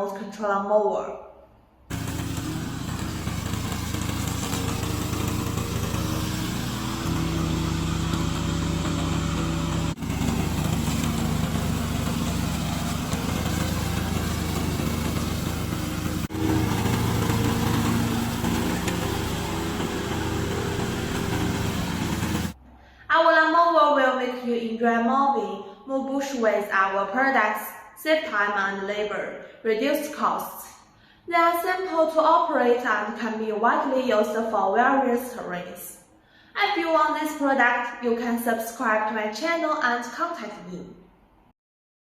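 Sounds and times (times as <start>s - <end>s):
lawn mower engine running: 1.9s - 22.6s.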